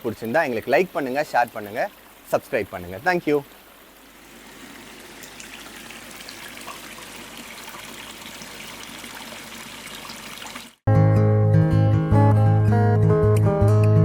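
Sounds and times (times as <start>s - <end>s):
water trickling into pond: 0.0s - 10.9s.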